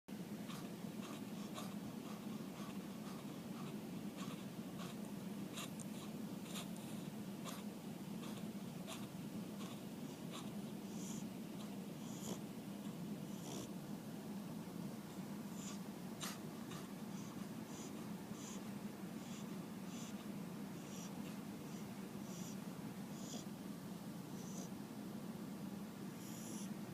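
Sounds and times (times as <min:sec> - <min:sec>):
pet snoring: 0:00.4 - 0:12.5, 0:13.2 - 0:13.7, 0:15.5 - 0:23.6, 0:24.3 - 0:24.8, 0:26.1 - 0:26.7
short clicks and snuffles: 0:00.5 - 0:10.5.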